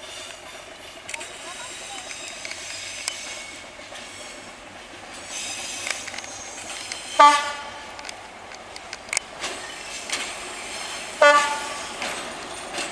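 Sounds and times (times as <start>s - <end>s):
diesel train rushing past: 0.0s - 12.9s
train horn blast: 7.2s - 7.9s, 11.2s - 11.9s.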